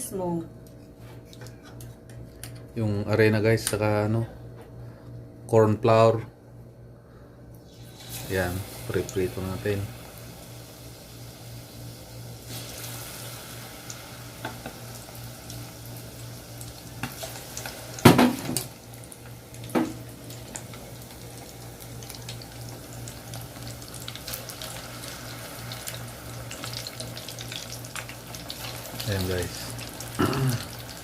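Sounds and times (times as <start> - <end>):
chicken wings sizzling in oil: 7.7 - 31.0.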